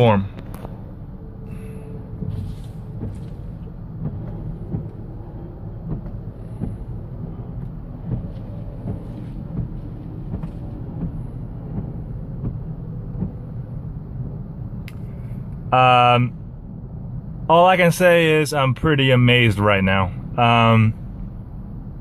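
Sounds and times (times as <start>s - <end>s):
low rumble: 0.0s - 17.5s
wiper blades sweeping windshield: 1.5s - 15.7s.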